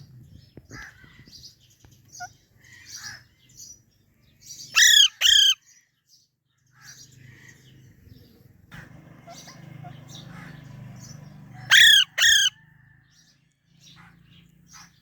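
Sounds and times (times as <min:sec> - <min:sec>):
baby parrot chirping: 0:02.1 - 0:03.2, 0:04.5 - 0:05.6, 0:09.3 - 0:12.6
parrot squawks: 0:04.7 - 0:05.6, 0:11.6 - 0:12.6.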